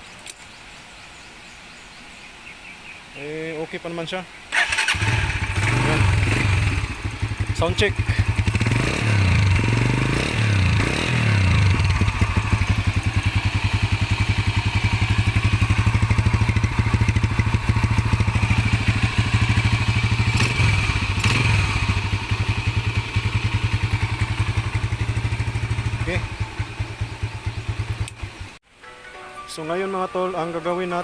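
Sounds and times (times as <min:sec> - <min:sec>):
motorcycle engine idling and revving: 0:04.5 - 0:28.6.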